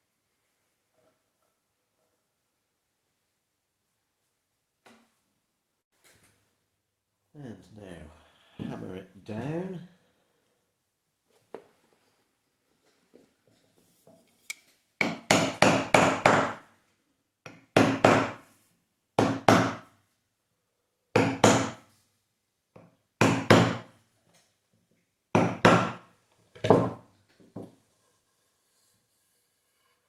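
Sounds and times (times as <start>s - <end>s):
hammer knocking on wood: 15.0s - 16.6s, 17.5s - 18.4s, 25.4s - 26.0s.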